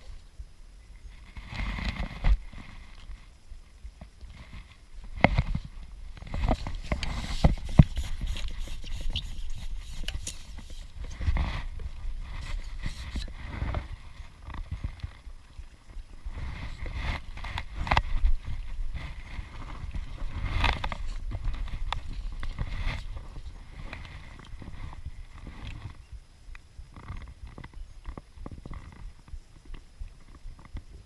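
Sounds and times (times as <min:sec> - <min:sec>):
handling knocks and scrapes: 0:04.3 - 0:15.2, 0:16.2 - 0:26.0.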